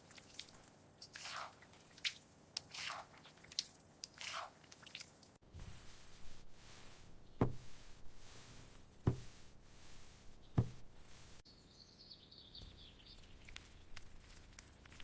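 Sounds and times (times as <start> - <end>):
dull knocks: 7.4 - 7.9, 9.0 - 9.5, 10.5 - 11.1.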